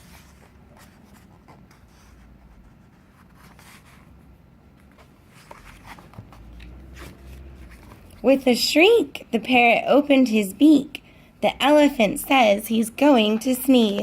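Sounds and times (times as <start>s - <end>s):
paper pages rustling: 0.0s - 8.2s.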